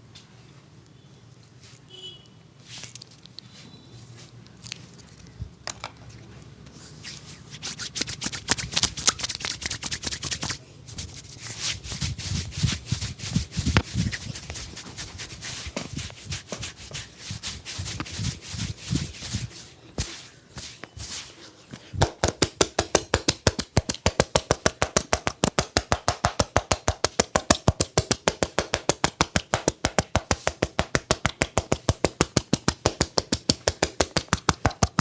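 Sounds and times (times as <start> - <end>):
hands slapping and rubbing skin: 7.0 - 35.0.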